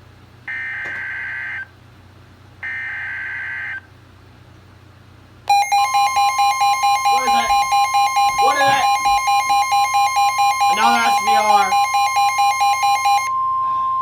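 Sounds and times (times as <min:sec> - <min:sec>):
steady alert attention tone: 0:05.5 - 0:13.3.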